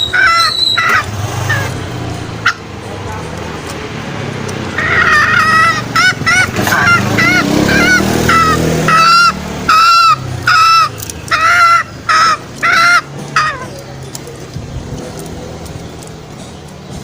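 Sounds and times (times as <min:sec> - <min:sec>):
junglefowl hoarse calls: 0:00.0 - 0:02.7, 0:04.7 - 0:13.8.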